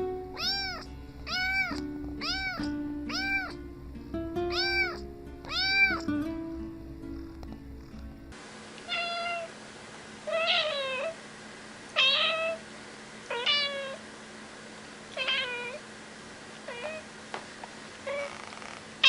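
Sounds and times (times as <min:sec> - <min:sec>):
cat meowing: 0:00.3 - 0:03.6, 0:04.5 - 0:06.1, 0:08.9 - 0:09.5, 0:10.3 - 0:11.2, 0:12.0 - 0:12.6, 0:13.3 - 0:14.0, 0:15.2 - 0:15.8, 0:16.7 - 0:17.1, 0:18.0 - 0:18.6.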